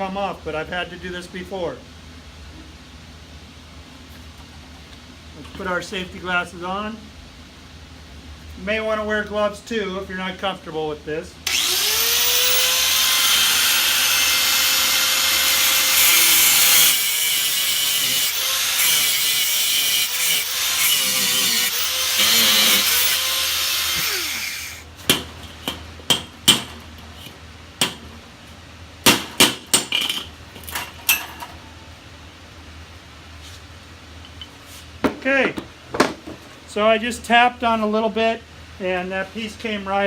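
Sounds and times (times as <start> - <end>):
angle grinder cutting metal: 11.5 - 24.8
sharp metal taps: 27.8 - 28.0.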